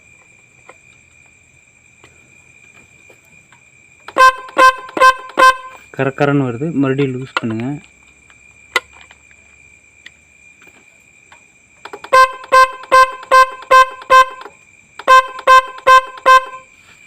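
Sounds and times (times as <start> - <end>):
motorcycle horn tooting: 4.1 - 5.8, 12.1 - 16.7.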